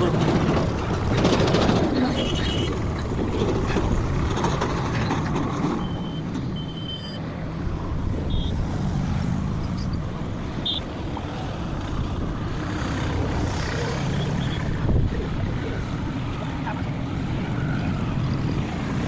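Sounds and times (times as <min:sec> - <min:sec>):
diesel engine rumbling: 0:00.0 - 0:19.0
short high-pitched beeps: 0:05.8 - 0:07.2.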